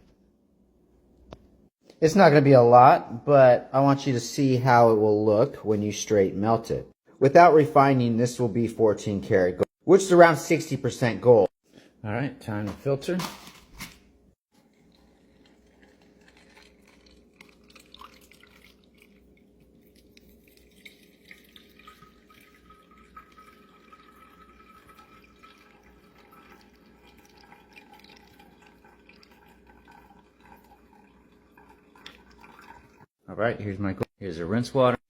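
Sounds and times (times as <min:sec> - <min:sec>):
liquid dripping into a container: 0:14.6 - 0:33.1.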